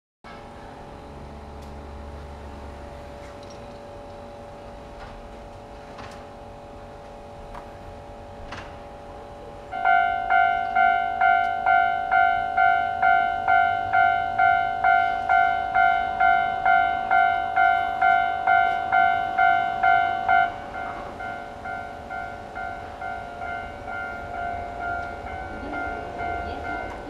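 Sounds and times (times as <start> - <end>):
level-crossing warning bell ringing: 6.3 - 27.0.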